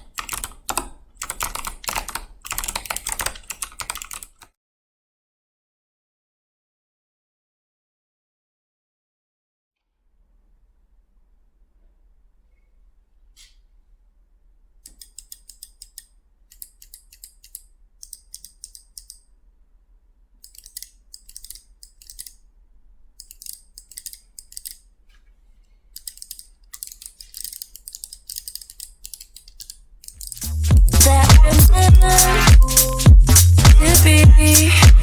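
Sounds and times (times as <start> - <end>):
mechanical keyboard typing: 0.0 - 4.5, 20.5 - 22.4, 23.2 - 24.8, 26.0 - 32.9.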